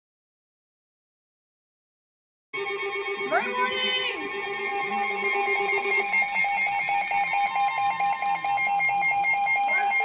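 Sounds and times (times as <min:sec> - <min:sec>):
low pulsing tone: 0:02.6 - 0:10.0
two-tone alert tone: 0:02.6 - 0:10.0.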